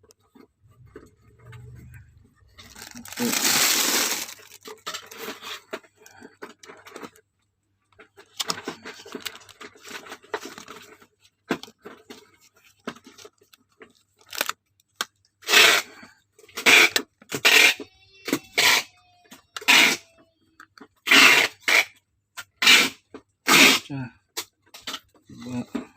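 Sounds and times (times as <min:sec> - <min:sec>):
packaging rustling: 0:02.5 - 0:07.2, 0:08.3 - 0:11.1, 0:11.9 - 0:14.6
packaging tearing: 0:02.6 - 0:05.4, 0:14.2 - 0:14.5.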